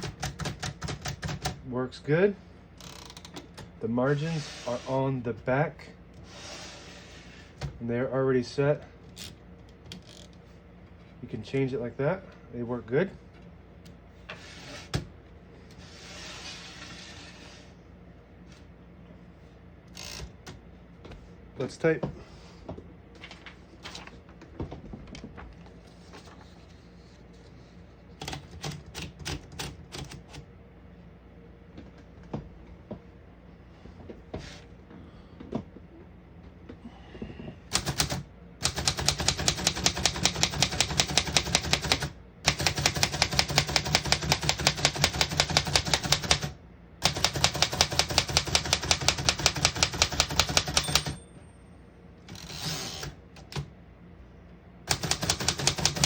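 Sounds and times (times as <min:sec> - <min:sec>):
manual typewriter typing: 0:00.0 - 0:01.6, 0:28.2 - 0:30.4, 0:37.7 - 0:51.2, 0:54.9 - 0:56.0.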